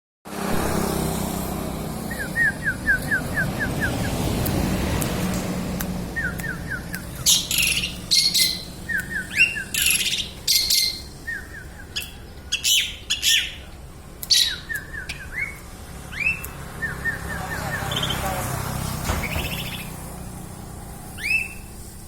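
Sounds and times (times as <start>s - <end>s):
songbirds chirping: 5.8s - 22.0s.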